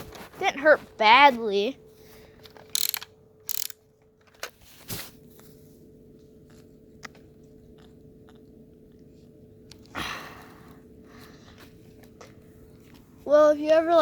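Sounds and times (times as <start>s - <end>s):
faint steady hum: 0.0s - 14.0s
handling clicks and crackles: 2.4s - 4.6s.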